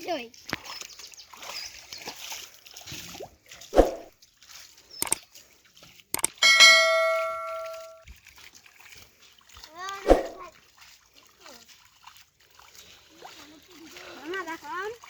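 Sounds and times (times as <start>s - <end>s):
struck metal ringing: 6.4s - 8.0s.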